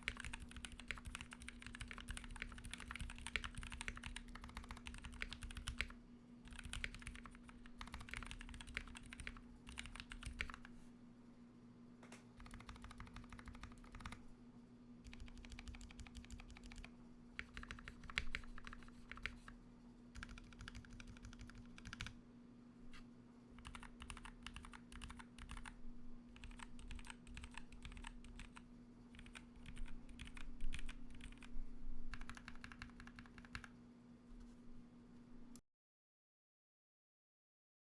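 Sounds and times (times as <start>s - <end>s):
mechanical keyboard typing: 0.0s - 10.7s, 12.4s - 14.2s, 15.0s - 19.5s, 20.2s - 22.1s, 23.6s - 25.8s, 26.4s - 31.5s, 32.1s - 33.7s
steady low hum: 0.0s - 35.6s.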